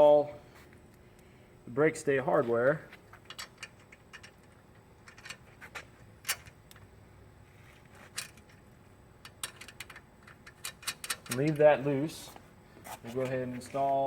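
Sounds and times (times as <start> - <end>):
small metal hardware clinking: 3.2 - 6.8, 9.2 - 11.7.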